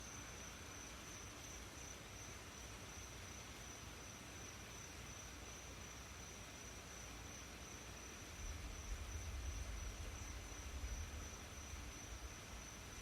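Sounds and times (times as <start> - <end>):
faint rain hiss: 0.0 - 13.0.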